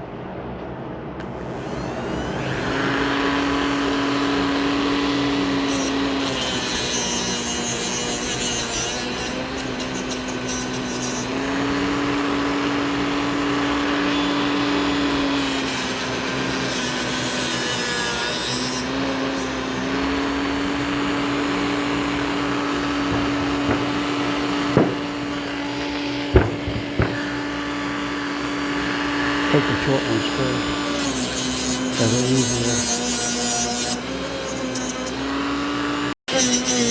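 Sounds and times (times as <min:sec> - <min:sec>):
power tool grinding: 0:01.2 - 0:36.9
sharp knocks: 0:23.0 - 0:25.2, 0:26.3 - 0:27.3.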